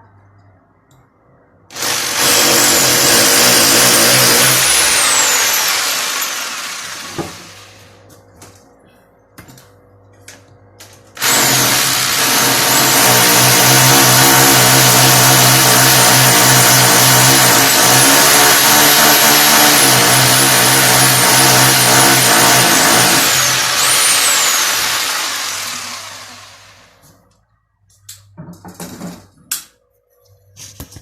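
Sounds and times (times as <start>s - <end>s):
power drill motor whining: 1.7s - 7.9s, 11.2s - 27.0s.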